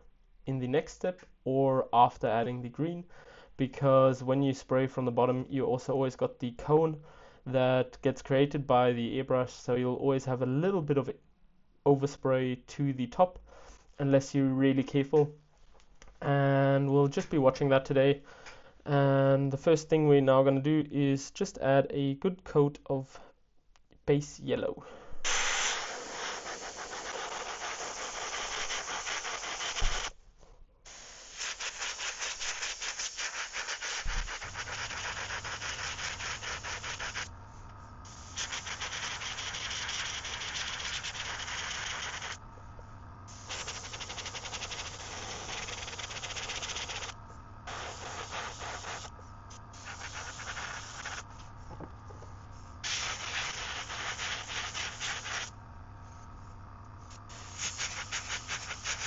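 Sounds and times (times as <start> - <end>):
airbrush hissing: 25.1 - 30.2, 30.9 - 59.0
low steady hum: 34.0 - 59.0.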